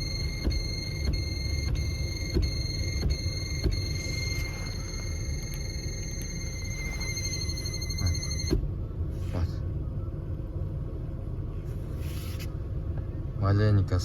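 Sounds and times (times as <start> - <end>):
blower motor squealing: 0.0 - 8.6
blower low rumble: 0.0 - 14.0.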